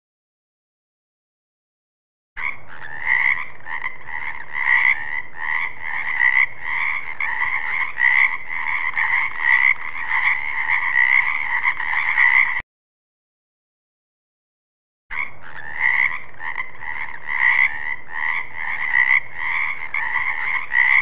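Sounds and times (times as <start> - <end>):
frogs croaking: 2.4 - 12.6, 15.1 - 21.0.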